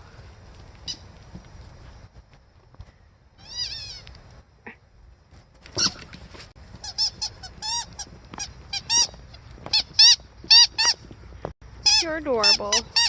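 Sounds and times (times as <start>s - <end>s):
squeaky dog toy squeaking: 6.8s - 8.0s, 8.7s - 9.1s, 9.7s - 11.0s, 11.8s - 13.0s.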